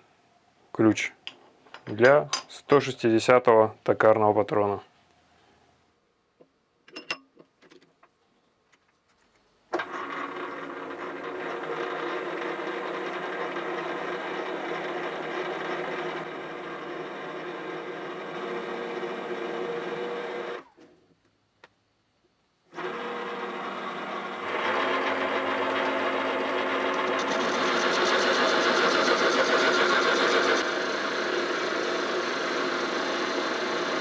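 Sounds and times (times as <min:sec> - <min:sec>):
machine tool motor humming and whining: 0:09.8 - 0:20.6, 0:22.7 - 0:34.0.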